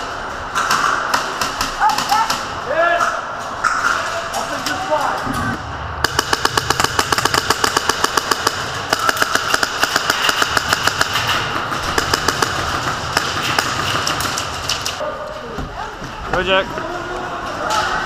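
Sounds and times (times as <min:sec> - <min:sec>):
airsoft rifles firing full-auto: 0:06.0 - 0:15.0.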